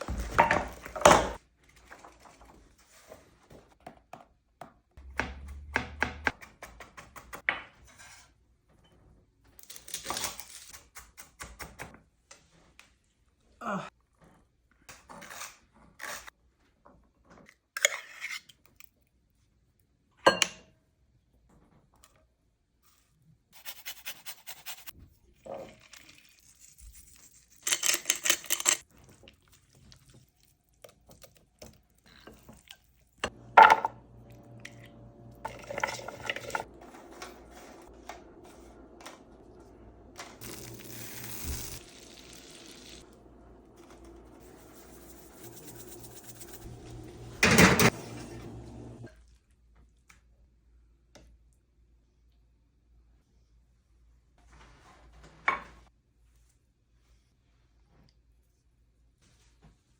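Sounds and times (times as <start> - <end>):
knocking and scraping: 33.2 - 40.4, 43.8 - 49.1.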